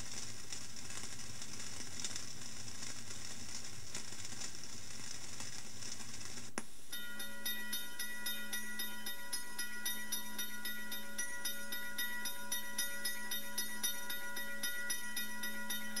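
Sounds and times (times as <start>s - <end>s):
hissing train beat: 6.8s - 16.0s
steady tonal hum: 6.8s - 16.0s.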